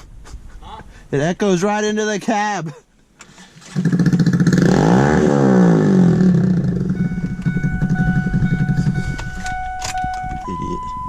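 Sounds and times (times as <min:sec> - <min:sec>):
truck engine cranking: 0:03.2 - 0:11.0
electronic beeping: 0:06.1 - 0:11.0.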